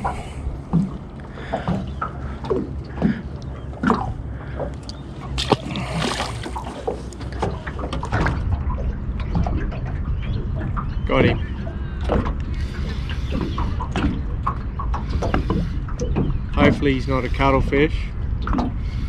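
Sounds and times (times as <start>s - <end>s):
steady low rumble: 0.0s - 10.8s
water splashing against boat: 0.0s - 17.7s.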